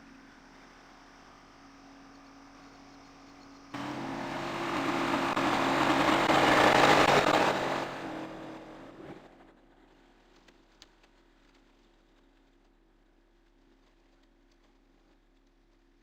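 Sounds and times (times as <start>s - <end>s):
rotary cutter rushing through weeds: 3.8s - 9.2s
tractor mower engine: 3.8s - 9.4s.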